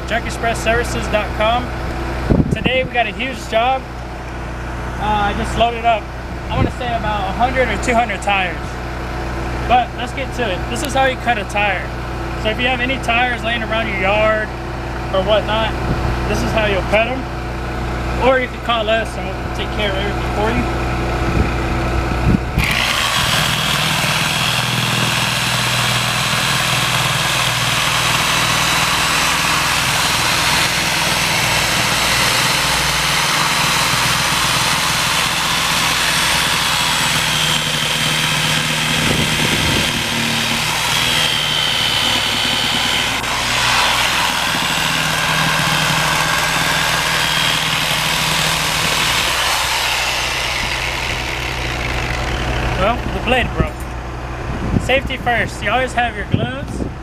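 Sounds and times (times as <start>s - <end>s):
power saw whining: 0.0s - 54.9s
blade grinding through rubber: 22.6s - 53.0s.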